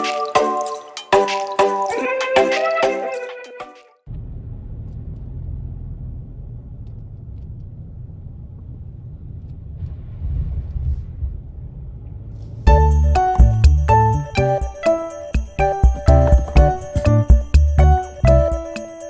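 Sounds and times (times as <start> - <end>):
music: 0.0 - 3.9, 12.7 - 19.0.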